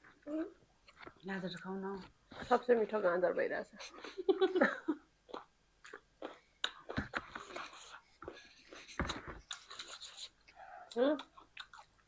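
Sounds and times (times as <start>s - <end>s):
person chewing and crunching: 5.3s - 10.3s, 11.2s - 12.0s.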